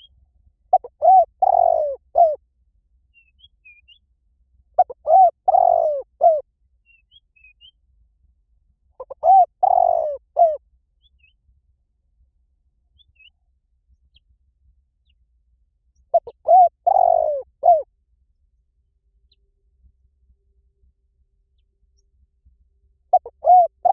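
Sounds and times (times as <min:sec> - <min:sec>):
small birds chirping: 0:00.0 - 0:02.4, 0:04.8 - 0:07.8, 0:09.0 - 0:11.4, 0:15.9 - 0:17.8
dove cooing: 0:00.7 - 0:02.4, 0:04.8 - 0:06.4, 0:09.0 - 0:10.6, 0:16.1 - 0:17.9, 0:23.1 - 0:23.9.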